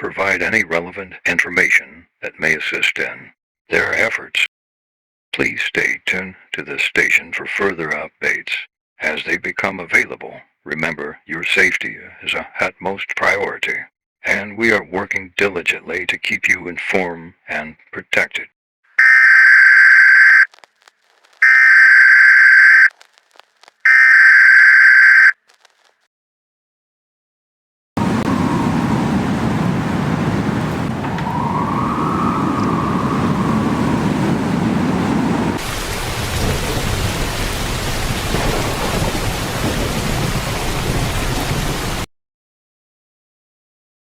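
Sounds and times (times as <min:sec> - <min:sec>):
siren-like sound: 0:19.0 - 0:20.5, 0:21.4 - 0:22.9, 0:23.9 - 0:25.4, 0:28.0 - 0:35.5
buzzing digital data bursts: 0:19.0 - 0:20.7, 0:21.4 - 0:22.9, 0:23.8 - 0:25.4
thunder rumble: 0:28.0 - 0:42.0
heavy rain falling: 0:28.0 - 0:42.1.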